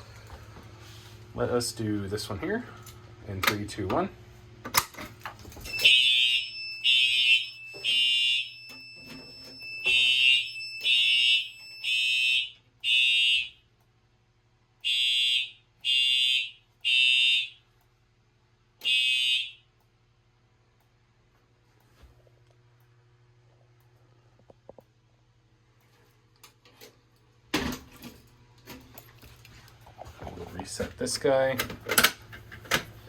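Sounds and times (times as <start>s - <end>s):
fire alarm horn blasts: 5.7s - 13.7s, 14.8s - 17.7s, 18.8s - 19.8s.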